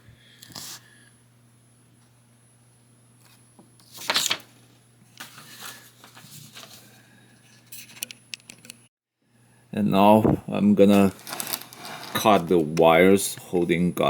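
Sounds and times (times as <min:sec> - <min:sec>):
paper packaging rustling: 0:03.8 - 0:08.1, 0:10.8 - 0:12.8.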